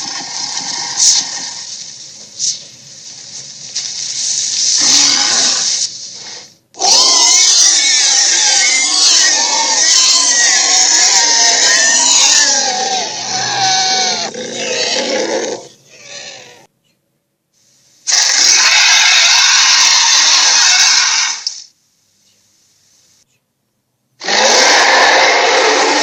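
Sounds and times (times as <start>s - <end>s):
wavering animal-like cries: 6.8s - 16.7s, 18.1s - 21.5s.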